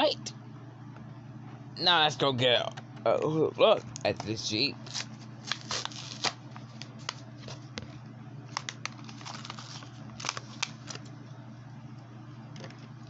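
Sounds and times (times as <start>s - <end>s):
steady low hum: 0.0s - 13.0s
packaging clicks and crinkles: 4.2s - 7.6s, 8.5s - 11.1s.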